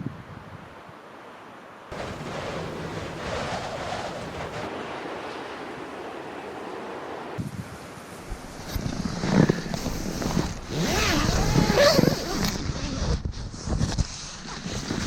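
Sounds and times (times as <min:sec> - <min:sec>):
wind rushing: 0:01.9 - 0:11.7.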